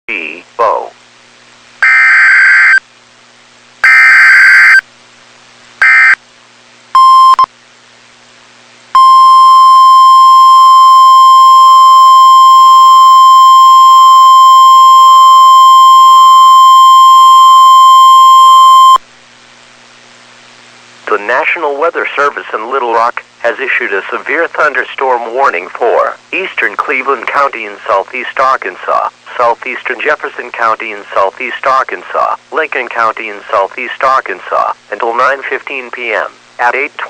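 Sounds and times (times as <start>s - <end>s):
brief beep: 9.0s - 19.0s.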